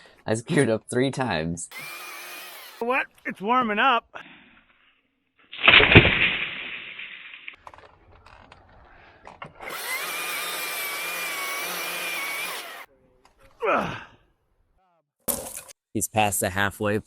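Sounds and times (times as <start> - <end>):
electric chainsaw whine: 1.7 - 2.8, 9.6 - 12.9.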